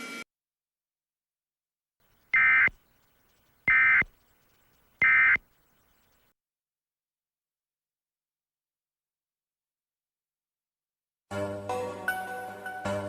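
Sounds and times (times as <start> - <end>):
digital data signal bursts: 2.3 - 2.8, 3.7 - 4.2, 5.0 - 5.5.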